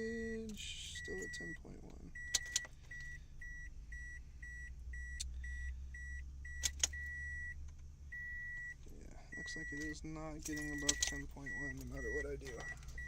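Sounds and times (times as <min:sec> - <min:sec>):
car warning chime beeping: 0:00.0 - 0:13.0
low steady hum: 0:00.0 - 0:13.0
sharp clicks: 0:06.6 - 0:07.0.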